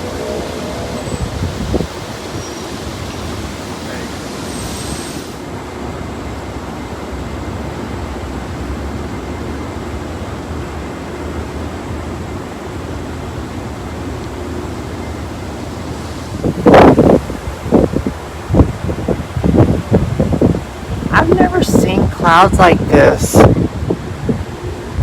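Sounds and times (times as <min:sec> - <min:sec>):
wind on microphone: 0:00.0 - 0:03.6, 0:16.0 - 0:25.0.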